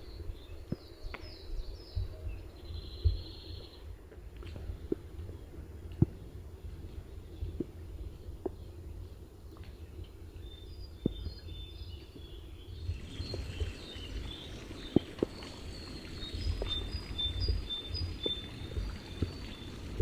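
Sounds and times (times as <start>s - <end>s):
small birds chirping: 10.4s - 20.0s.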